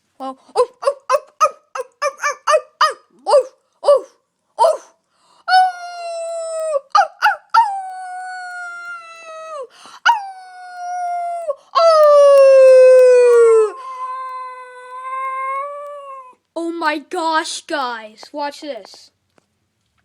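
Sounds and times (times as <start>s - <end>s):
dog yelping: 0.6s - 5.0s, 6.8s - 8.0s
dog howling: 5.6s - 16.4s.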